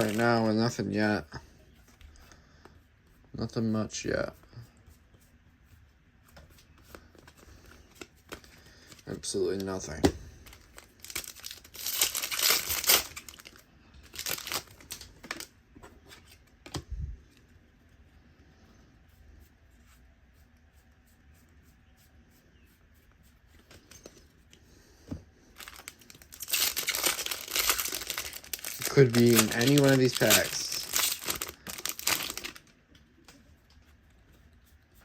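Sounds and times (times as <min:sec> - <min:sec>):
card wrappers tearing and crinkling: 0:00.0 - 0:00.8, 0:10.4 - 0:15.5, 0:25.6 - 0:32.7.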